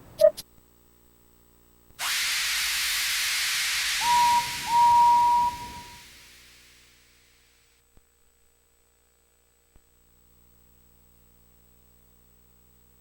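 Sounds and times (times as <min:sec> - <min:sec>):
steam whistle toots: 0:02.0 - 0:06.6
steam hissing: 0:02.0 - 0:07.6.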